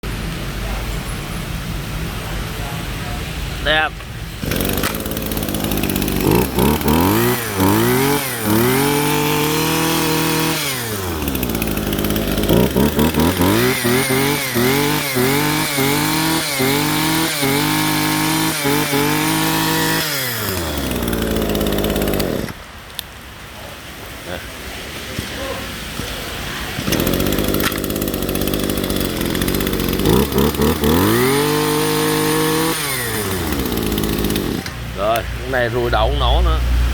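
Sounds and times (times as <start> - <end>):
brush cutter engine revving: 4.4 - 22.7, 26.8 - 36.9.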